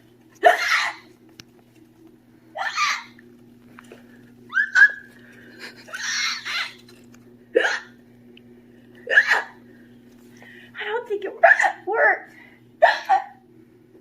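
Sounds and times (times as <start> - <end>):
person voicing high hiccups: 0.4 - 1.1, 7.6 - 8.0, 9.1 - 9.6, 12.8 - 13.4.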